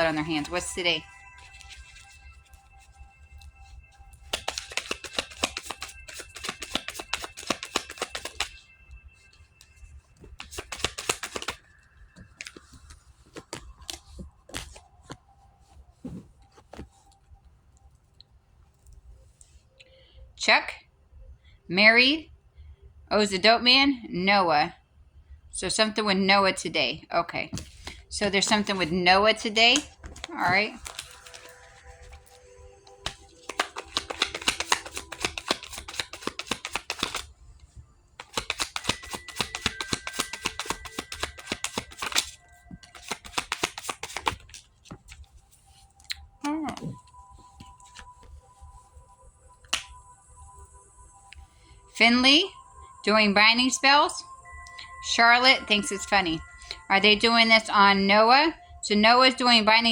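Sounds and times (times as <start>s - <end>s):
cards shuffling: 0.0s - 17.2s, 27.5s - 37.3s, 38.2s - 49.0s, 49.7s - 50.0s
cards snapping and rustling: 1.3s - 2.6s, 3.4s - 8.7s, 9.7s - 15.2s, 27.6s - 28.9s, 29.6s - 37.3s, 38.2s - 48.4s, 49.7s - 50.0s.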